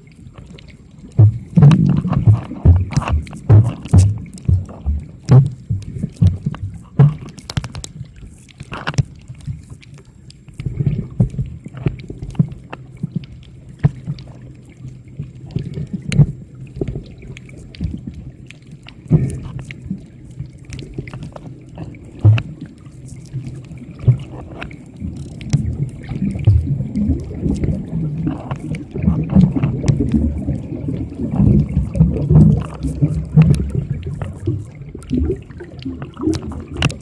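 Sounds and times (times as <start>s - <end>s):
faint steady hum: 0.0s - 37.0s
underwater water rumble: 0.0s - 37.0s
sharp knocks and clicks: 1.2s - 7.8s, 22.2s - 22.5s.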